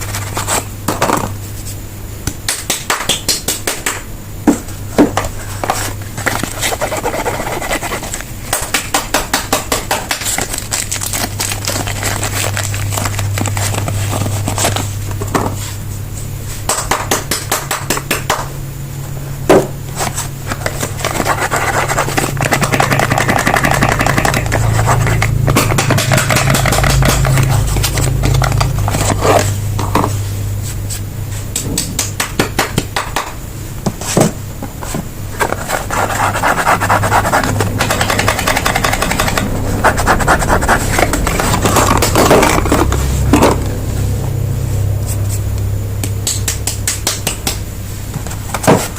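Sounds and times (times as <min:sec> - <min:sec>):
packaging crinkling: 0:10.2 - 0:14.9
low hum: 0:10.3 - 0:16.7, 0:17.6 - 0:48.9.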